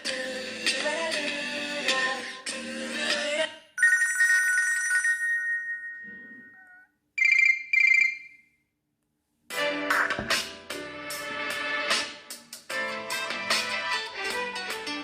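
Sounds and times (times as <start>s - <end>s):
musical ringtone: 3.8s - 8.4s
two-tone chime: 3.8s - 8.4s.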